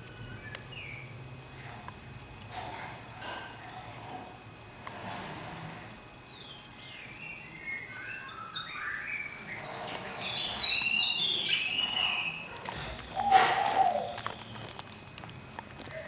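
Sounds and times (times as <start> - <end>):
bird whistled song: 6.3 - 12.5, 13.1 - 14.5.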